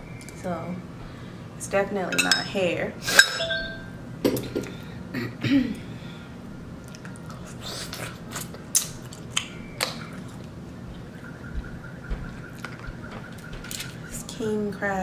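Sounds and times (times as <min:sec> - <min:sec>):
person chewing: 0:06.9 - 0:10.6.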